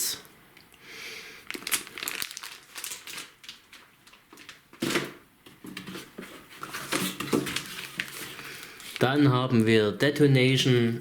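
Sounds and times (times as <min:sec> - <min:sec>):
packaging rustling and clicking: 0:01.4 - 0:09.1.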